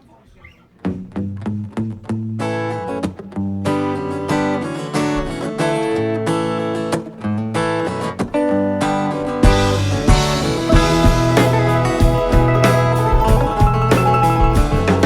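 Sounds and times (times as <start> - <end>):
acoustic guitar strumming: 1.0 - 15.0
plucked string notes: 9.4 - 15.0.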